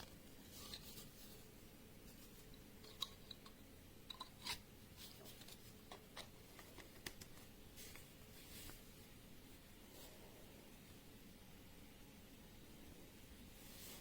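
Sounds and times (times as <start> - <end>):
faint clicks and taps: 5.2 - 8.8.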